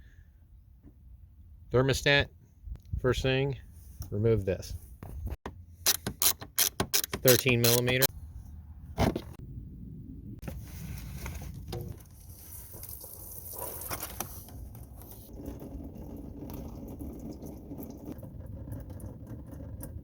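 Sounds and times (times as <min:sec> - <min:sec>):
hand tools clicking and rattling: 0:05.8 - 0:08.1.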